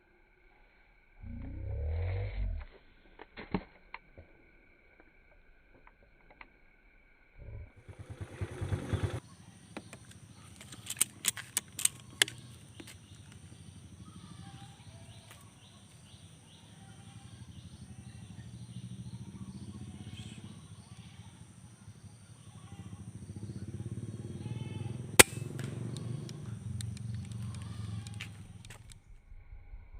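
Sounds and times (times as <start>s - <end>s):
low engine hum: 23.0s - 29.6s
sharp clicks: 25.2s - 29.0s.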